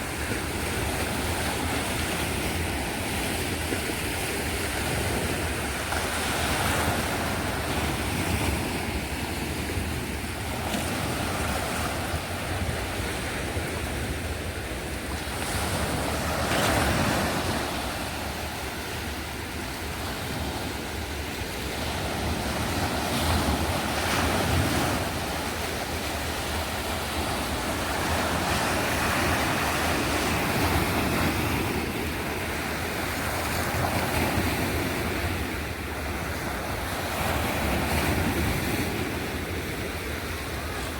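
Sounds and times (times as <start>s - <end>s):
sea waves washing ashore: 0.0s - 40.9s.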